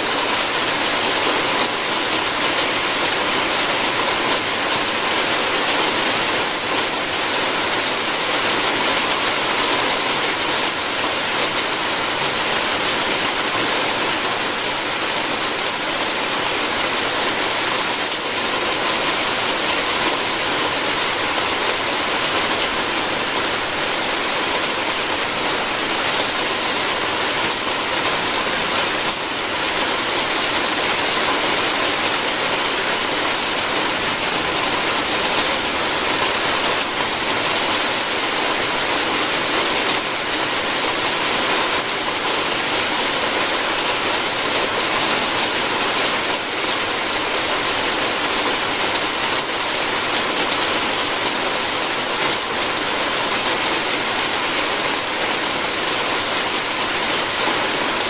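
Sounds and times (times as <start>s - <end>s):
heavy rain on a roof: 0.0s - 58.0s.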